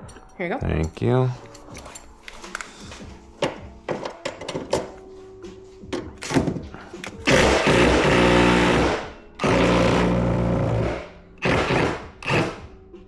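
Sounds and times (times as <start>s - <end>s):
impact wrench running in bursts: 7.0s - 12.7s.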